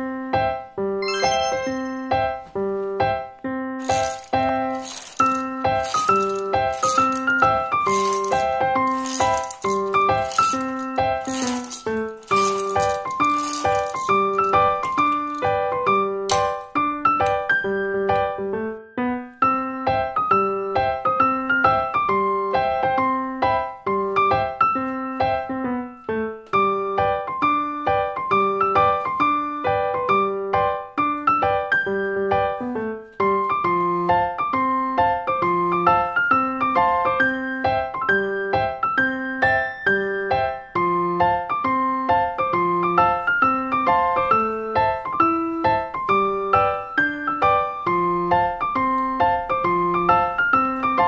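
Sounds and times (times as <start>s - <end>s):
piano melody over chords: 0.0s - 51.0s
keyboard music: 1.0s - 2.6s.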